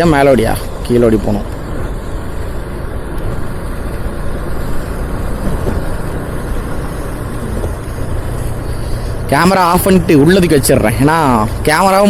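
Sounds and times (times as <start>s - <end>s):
motorcycle engine: 0.0s - 12.0s
wind and tyres rushing: 0.0s - 12.0s.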